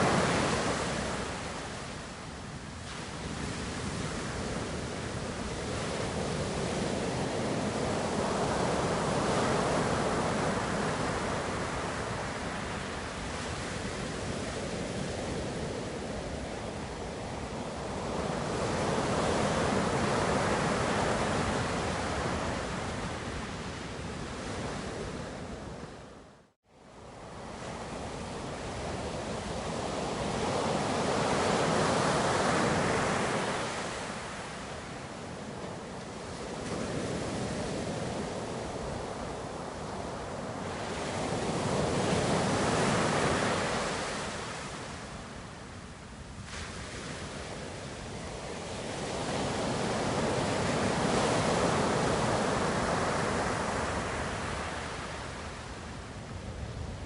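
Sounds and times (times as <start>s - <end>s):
ocean waves breaking: 0.0s - 16.6s, 27.2s - 45.4s, 46.4s - 56.1s.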